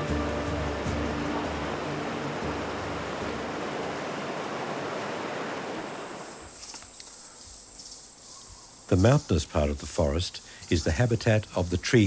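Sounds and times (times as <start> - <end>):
rushing water: 0.0 - 6.5
high insect whine: 0.0 - 12.0.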